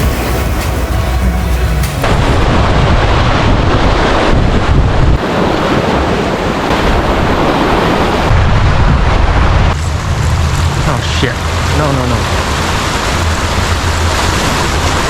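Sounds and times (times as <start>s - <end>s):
wind buffeting microphone: 2.0s - 15.0s
waves washing on rocky shore: 9.7s - 15.0s.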